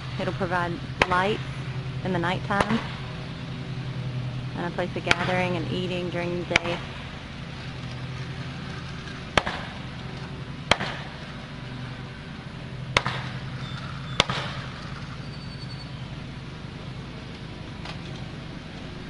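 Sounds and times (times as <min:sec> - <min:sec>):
steady low hum: 0:00.0 - 0:19.0
sharp construction impacts: 0:02.5 - 0:03.4, 0:06.4 - 0:12.1, 0:12.8 - 0:15.9.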